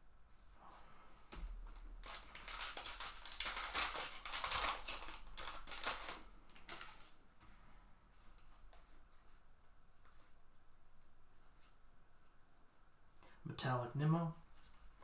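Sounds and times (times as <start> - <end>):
card wrapper crinkling: 1.7 - 7.2.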